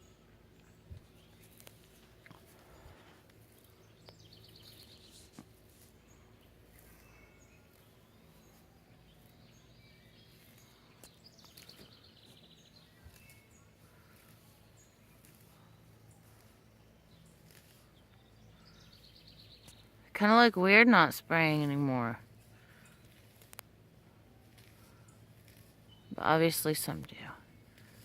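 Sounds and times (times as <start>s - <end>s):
faint low hum: 0.0s - 28.0s
songbird trill: 0.0s - 28.0s
bird chirps: 2.8s - 5.3s, 6.0s - 20.0s.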